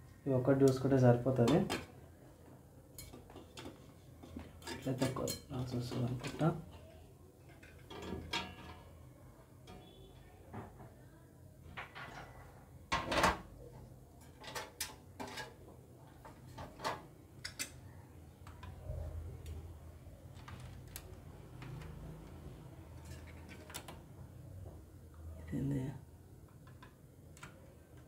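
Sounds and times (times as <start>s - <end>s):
metal hardware clicking and knocking: 7.5s - 8.8s.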